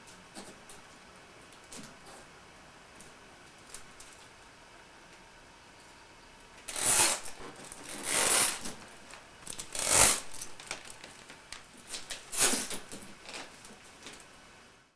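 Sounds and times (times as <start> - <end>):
stroller frame scraping and clicking: 6.7 - 8.8, 9.6 - 10.8.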